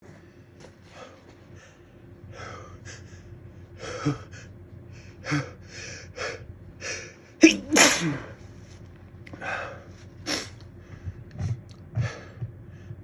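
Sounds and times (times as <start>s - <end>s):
person gasping breaths: 0.1s - 7.4s, 9.3s - 13.0s
loud sneeze: 7.4s - 8.4s.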